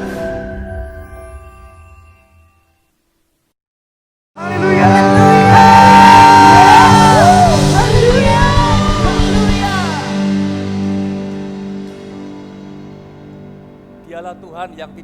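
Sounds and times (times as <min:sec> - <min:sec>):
voices shouting and singing: 0:04.4 - 0:10.2.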